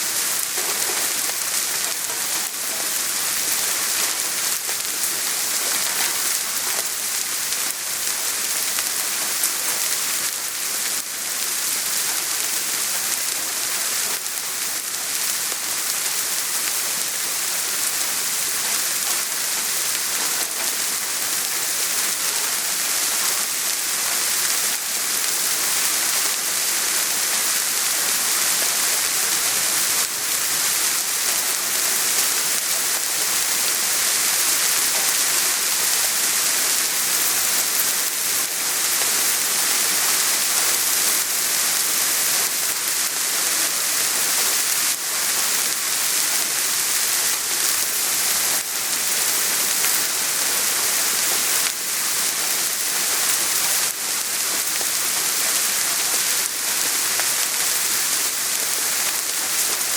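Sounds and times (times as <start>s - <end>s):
soft rain hiss: 0.0s - 59.9s.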